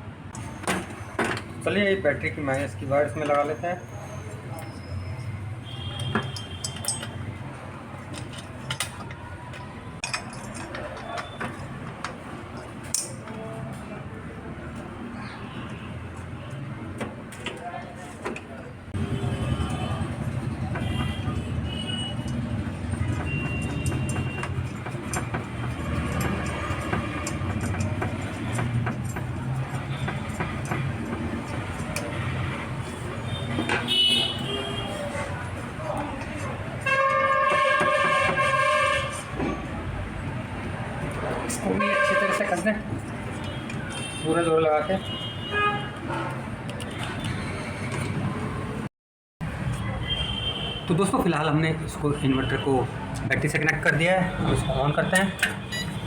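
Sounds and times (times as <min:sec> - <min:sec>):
hand tools clicking and knocking: 0:04.6 - 0:07.4, 0:08.0 - 0:13.4, 0:20.5 - 0:33.9
metallic clicks and clinks: 0:06.0 - 0:07.3.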